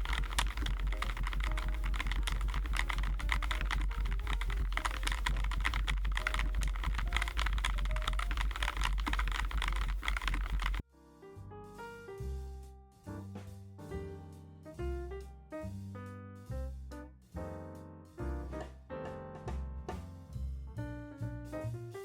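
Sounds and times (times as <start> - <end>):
mechanical keyboard typing: 0.0 - 10.8
piano jazz music: 0.0 - 22.0
soft background music: 0.0 - 22.0.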